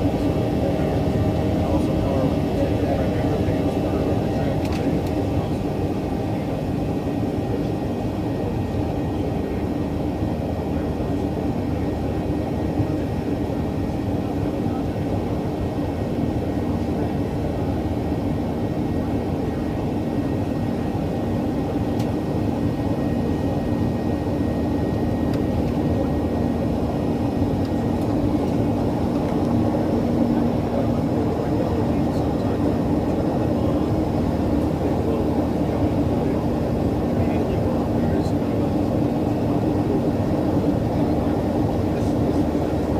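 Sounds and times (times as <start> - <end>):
airplane cabin engine drone: 0.0 - 42.9.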